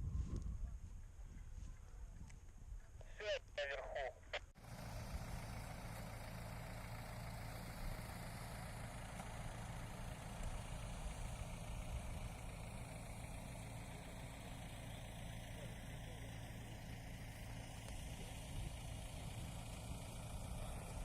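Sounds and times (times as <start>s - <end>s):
vehicle engine idling: 0.5s - 21.0s.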